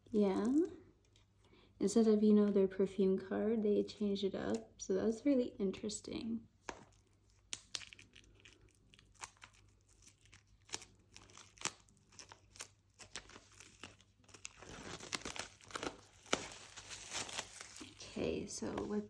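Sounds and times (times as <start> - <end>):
plastic wrap tearing and crinkling: 6.6 - 19.0.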